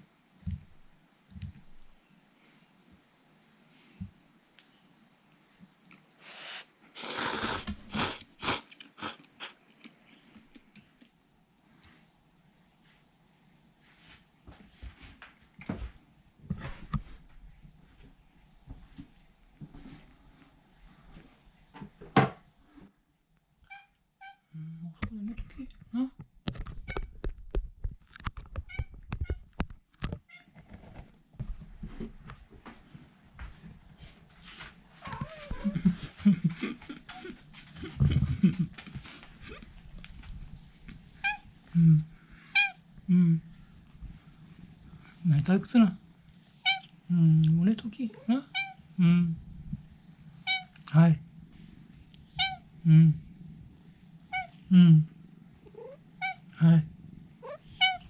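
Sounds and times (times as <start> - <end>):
person slurping noodles: 7.0 - 9.6
cat meowing softly: 35.0 - 35.8, 46.6 - 46.9, 48.5 - 48.8, 50.4 - 50.8, 52.3 - 52.6, 55.6 - 56.5, 57.4 - 58.0.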